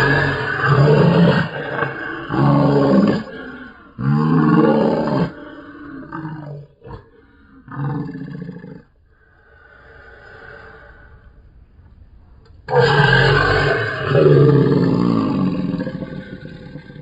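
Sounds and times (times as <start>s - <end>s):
loud deep roar: 0.0s - 8.9s, 12.7s - 17.0s.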